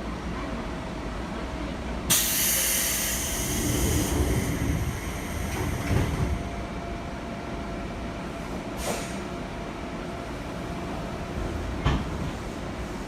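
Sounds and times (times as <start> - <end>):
electric train running rumble: 0.0 - 13.0.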